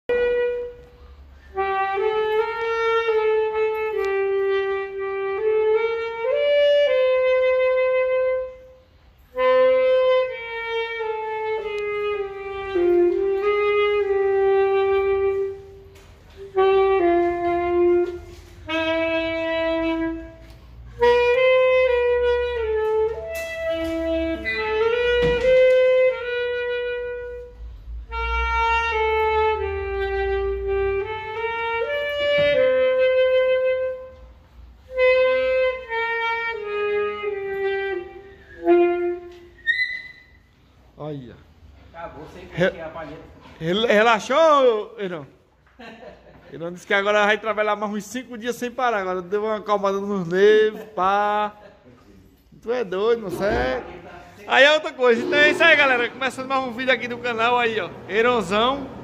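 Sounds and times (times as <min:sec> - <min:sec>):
saxophone-like solo melody: 0:00.1 - 0:40.5, 0:54.5 - 0:59.0.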